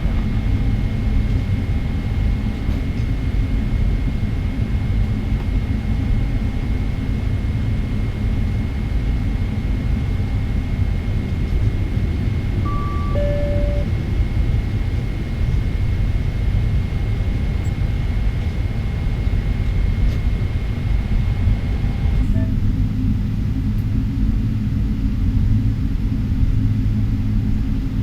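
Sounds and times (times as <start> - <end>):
airliner cabin rumble: 0.0 - 27.9
low hum: 12.6 - 14.9
faint high tone: 12.7 - 13.9
short beep: 12.7 - 13.9.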